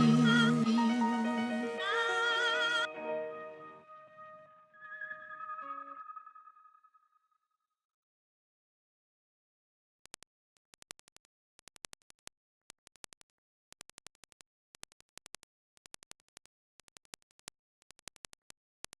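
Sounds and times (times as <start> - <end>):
faint rhythmic clicking: 10.0 - 19.0.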